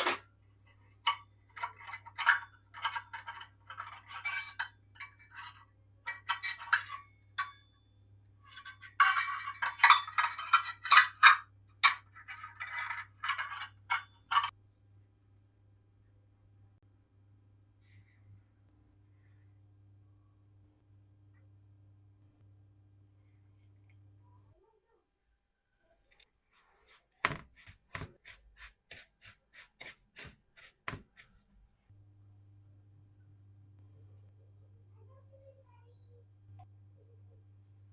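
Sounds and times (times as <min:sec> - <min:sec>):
hard objects clinking together: 0:08.4 - 0:14.5.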